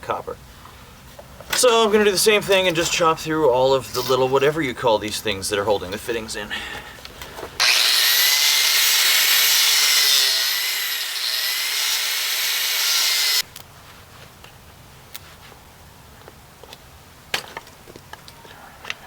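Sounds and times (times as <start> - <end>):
power cutter high whine: 7.6 - 13.4.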